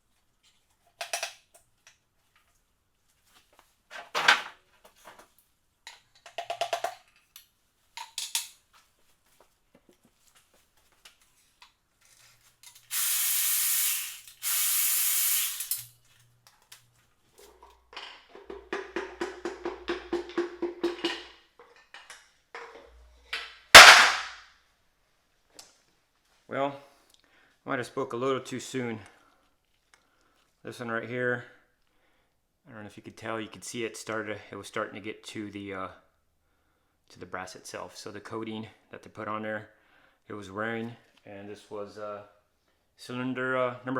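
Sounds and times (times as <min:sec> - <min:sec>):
aerosol spray hissing: 0:12.9 - 0:15.8
loud metal clank: 0:23.8 - 0:24.4.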